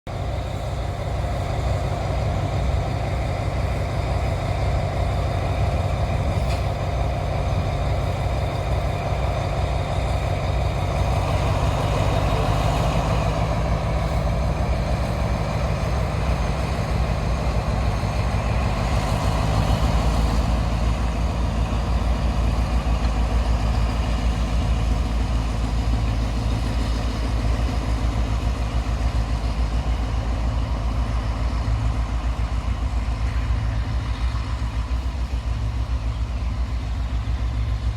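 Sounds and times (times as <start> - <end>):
diesel locomotive engine rumble: 0.0 - 37.9.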